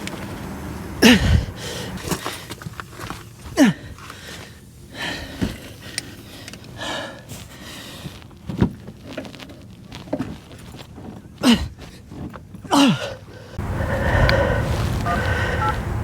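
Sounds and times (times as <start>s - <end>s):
man grunting and breathing hard: 1.0s - 2.0s, 3.6s - 4.0s, 12.7s - 15.8s.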